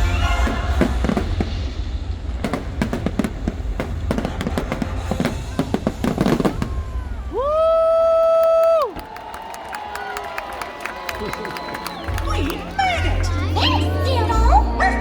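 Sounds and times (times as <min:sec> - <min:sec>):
music: 0:00.0 - 0:01.7, 0:12.0 - 0:15.0
fireworks bangs and crackles: 0:00.0 - 0:09.1.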